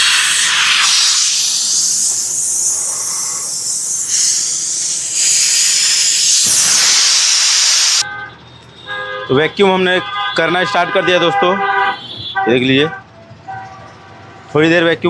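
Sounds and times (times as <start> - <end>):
gas venting with high hiss: 0.0 - 8.0.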